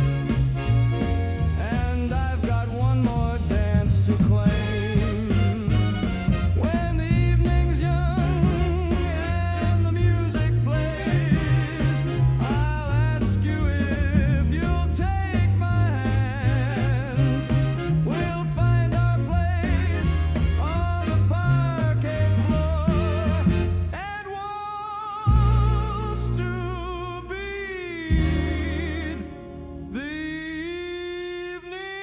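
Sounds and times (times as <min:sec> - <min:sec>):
swing dance band music: 0:00.0 - 0:31.3.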